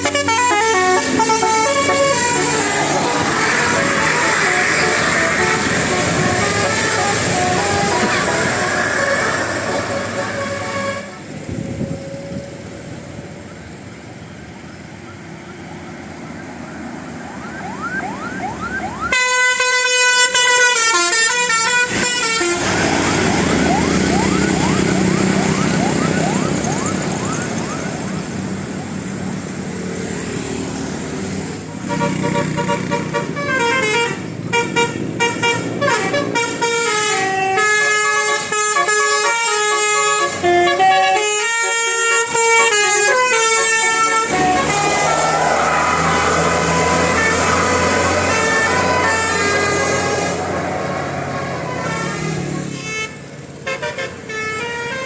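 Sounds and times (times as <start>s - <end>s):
multi-tone horn melody: 0.0s - 11.8s, 19.0s - 26.4s, 31.8s - 55.0s
bus engine whining: 0.0s - 55.0s.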